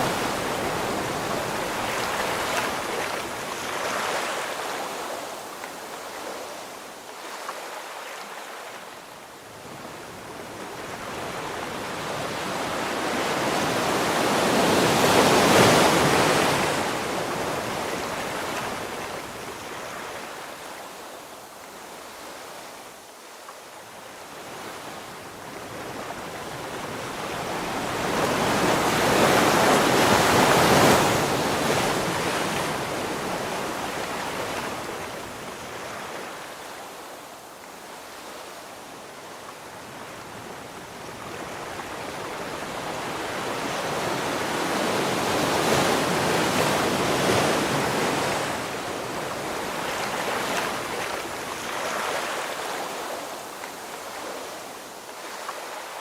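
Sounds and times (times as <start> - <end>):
ocean waves breaking on shore: 0.0 - 56.0.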